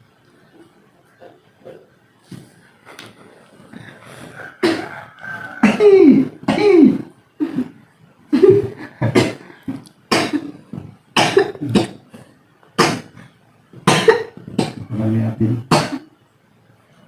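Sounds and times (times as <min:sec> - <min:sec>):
person coughing harshly: 0:04.6 - 0:07.7, 0:08.4 - 0:09.5, 0:10.1 - 0:10.6, 0:11.2 - 0:12.2, 0:12.8 - 0:13.2, 0:13.9 - 0:14.9, 0:15.7 - 0:16.1.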